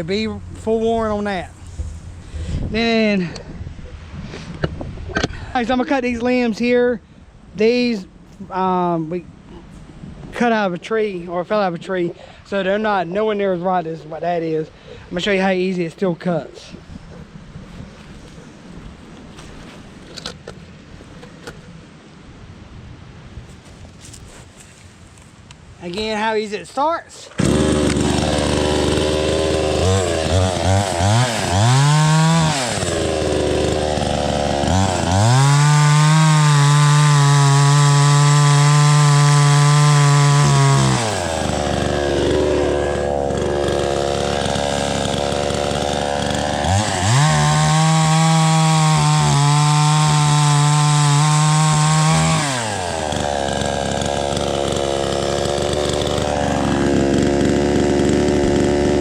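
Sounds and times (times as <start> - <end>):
chainsaw cutting tree limbs: 27.4 - 59.0
chainsaw idling and revving: 27.4 - 59.0.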